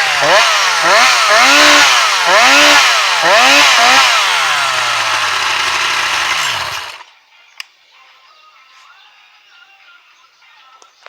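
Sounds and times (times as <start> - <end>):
chainsaw revving and running down: 0.0 - 7.1.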